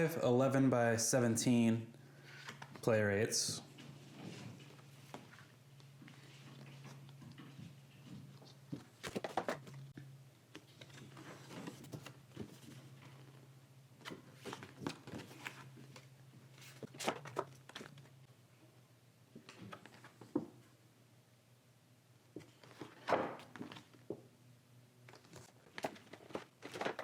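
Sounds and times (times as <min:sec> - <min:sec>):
paper sheets slapping and rustling: 0:08.7 - 0:09.8, 0:10.5 - 0:13.3, 0:14.0 - 0:18.1, 0:22.4 - 0:24.0, 0:25.1 - 0:27.0.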